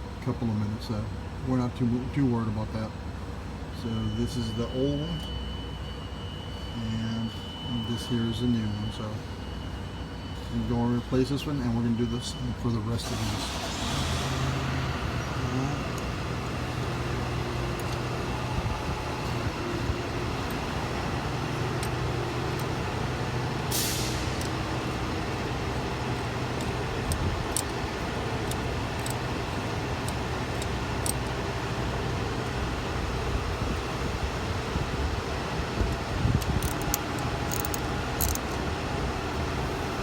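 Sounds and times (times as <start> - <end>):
low mechanical hum: 0.0 - 40.0
short hiss: 23.7 - 24.4.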